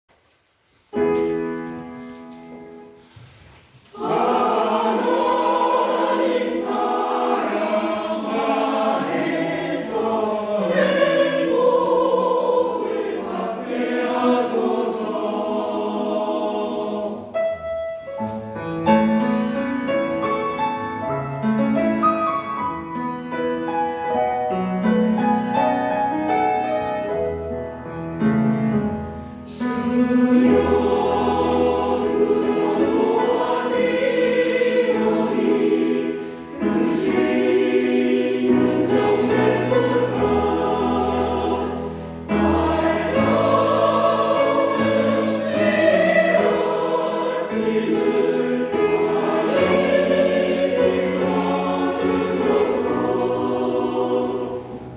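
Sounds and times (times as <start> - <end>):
choir singing: 3.8 - 19.3, 29.5 - 54.9.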